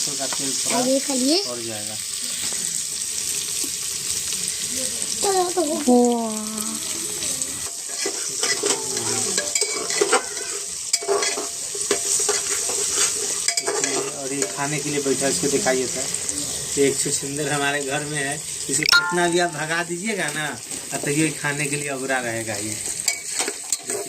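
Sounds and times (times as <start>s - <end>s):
meat sizzling in oil: 0.0s - 24.0s
spoon scraping a pot: 7.7s - 14.6s.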